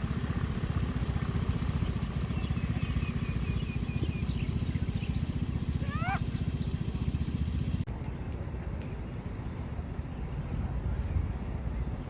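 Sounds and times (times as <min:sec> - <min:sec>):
pulsing low rumble: 0:00.0 - 0:07.9
bird chirping high: 0:02.3 - 0:06.8.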